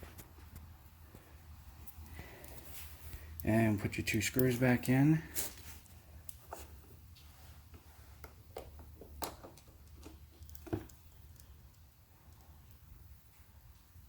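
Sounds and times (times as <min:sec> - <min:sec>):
plastic parts and screwdriver clicking: 0:08.2 - 0:12.4.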